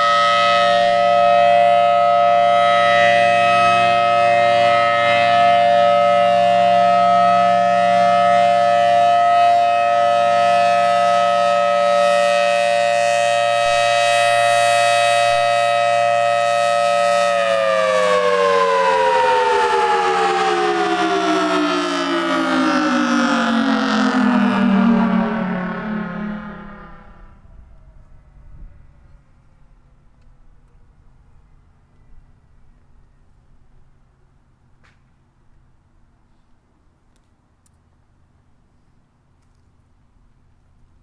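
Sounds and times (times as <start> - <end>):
warning siren chord: 0.0 - 28.2.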